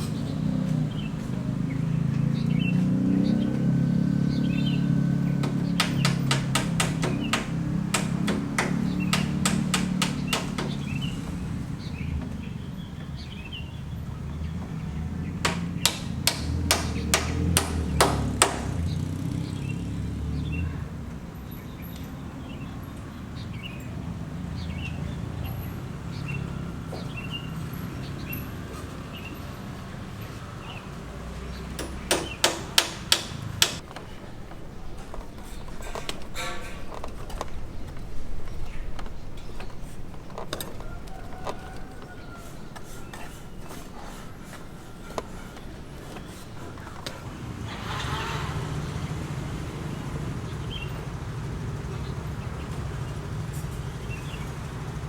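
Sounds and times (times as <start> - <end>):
hammer blows: 3.3 - 11.8, 15.3 - 18.9, 31.8 - 50.1.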